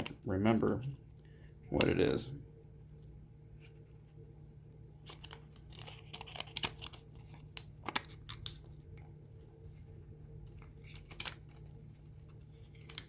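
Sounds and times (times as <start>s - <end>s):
paper rustling and crinkling: 5.0s - 13.0s.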